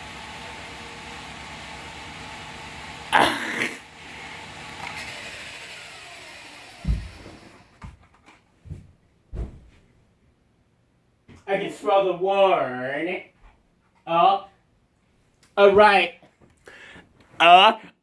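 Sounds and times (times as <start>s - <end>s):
small electric motor whirring: 3.8s - 7.8s
dull thumps: 6.8s - 9.9s.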